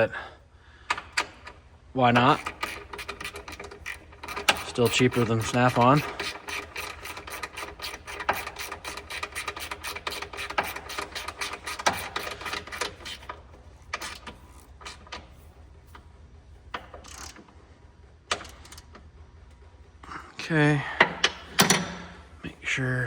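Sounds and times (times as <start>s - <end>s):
ratchet wrench clicking: 0.9s - 15.2s.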